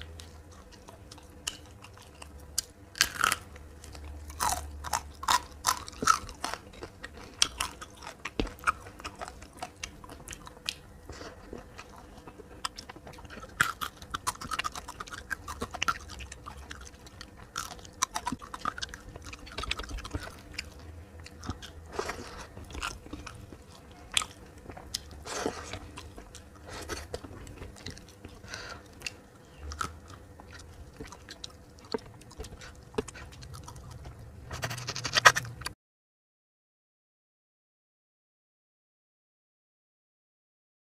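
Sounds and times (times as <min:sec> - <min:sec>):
food crunching: 0:00.0 - 0:35.7
person chewing food: 0:00.0 - 0:35.7.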